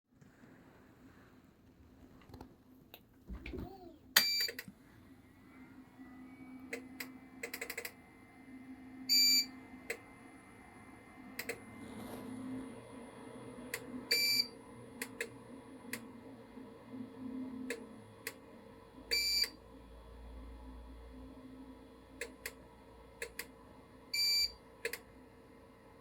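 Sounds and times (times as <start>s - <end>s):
faint low hum: 0.2s - 26.0s
relay clicks: 6.7s - 8.0s
short beeps: 9.1s - 9.5s.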